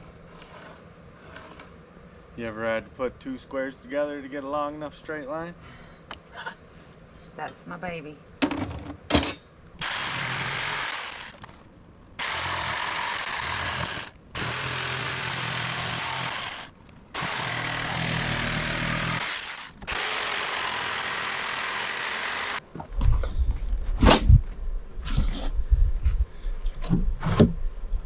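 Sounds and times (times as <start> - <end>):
handheld power tool running: 9.8 - 11.5, 12.2 - 22.6.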